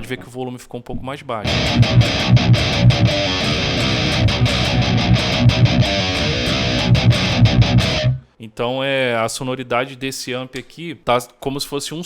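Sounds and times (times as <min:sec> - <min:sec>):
distorted electric guitar metal riff: 0:01.4 - 0:08.2.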